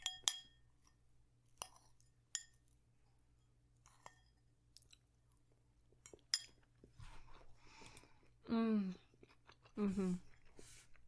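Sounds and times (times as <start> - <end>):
quiet chewing: 4.7 - 11.0.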